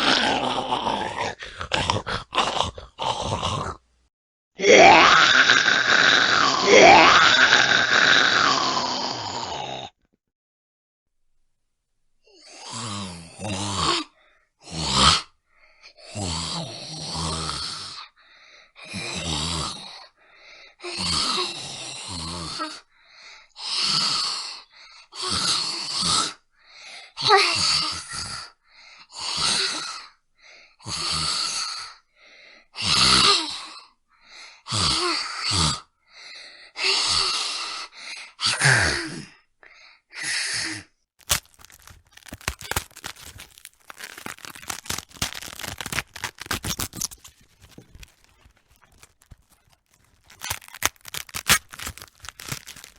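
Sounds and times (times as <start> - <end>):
raspy zombie groans and growls: 0.0 - 3.8, 4.6 - 10.0, 12.4 - 15.3, 36.9 - 39.4, 40.6 - 48.1, 50.3 - 52.9
wet crackling tearing meat: 41.2 - 52.9.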